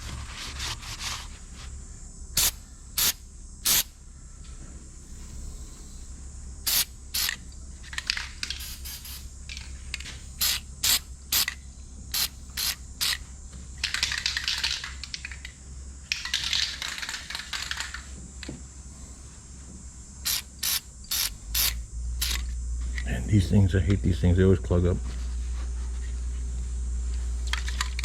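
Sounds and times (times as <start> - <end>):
aerosol can spraying: 2.4 - 3.9, 6.7 - 7.4, 8.4 - 9.3, 10.4 - 13.2, 20.2 - 22.5.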